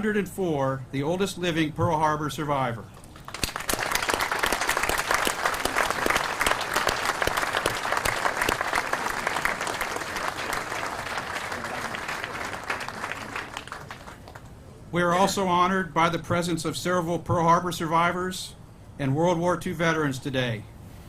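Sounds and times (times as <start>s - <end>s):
audience applauding: 3.2s - 14.5s.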